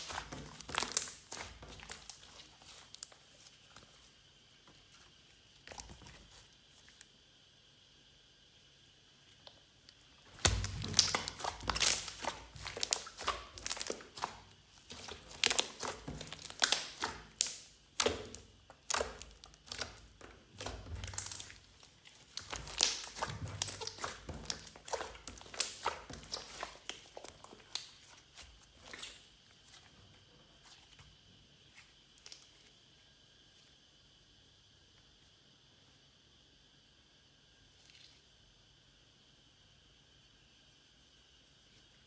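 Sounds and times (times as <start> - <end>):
hands squishing slime: 0.0 - 7.0, 10.3 - 29.9.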